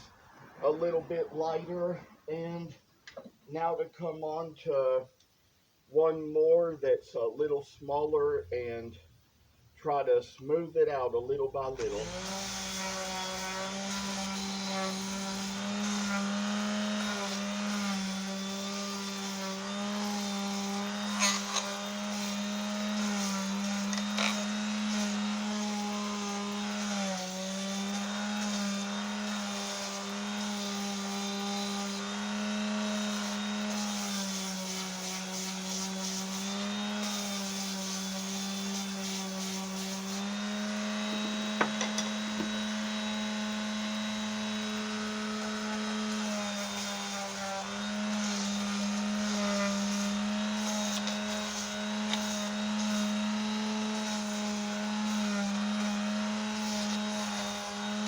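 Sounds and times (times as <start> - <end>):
electric sander on wood: 11.7 - 58.0.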